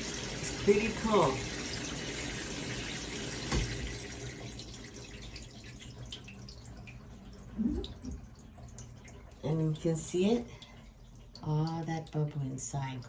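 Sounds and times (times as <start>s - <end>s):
shower water spraying: 0.0s - 4.5s
water dripping: 0.0s - 13.0s
knock: 3.5s - 3.8s.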